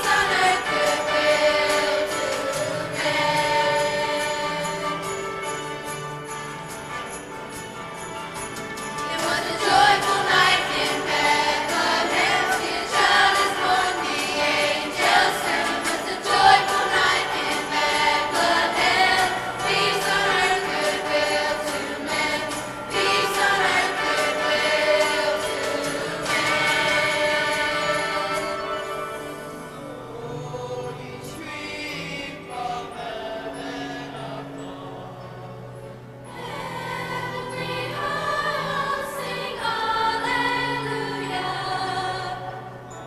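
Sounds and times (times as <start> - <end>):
children's choir singing: 0.0 - 5.8, 8.9 - 43.0
jingle bells shaking: 0.0 - 29.7
backing music: 0.0 - 43.0.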